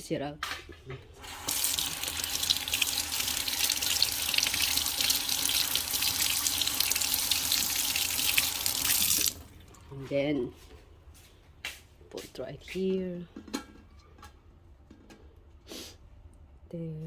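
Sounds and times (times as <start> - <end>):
tap water running into sink: 1.2 - 9.6.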